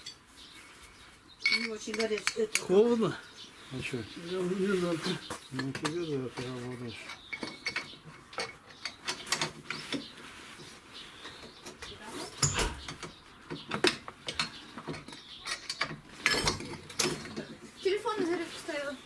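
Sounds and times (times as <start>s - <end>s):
light clicks and knocks: 5.2s - 17.6s.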